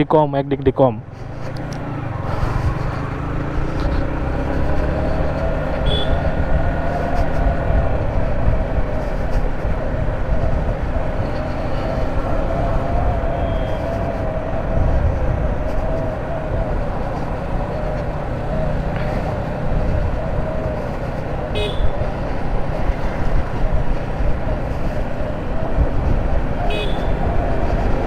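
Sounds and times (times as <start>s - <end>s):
wind and road noise: 0.0s - 28.0s
motorcycle engine running: 1.1s - 28.0s
vehicle horn toot: 5.8s - 6.4s, 21.5s - 22.0s, 26.7s - 27.2s.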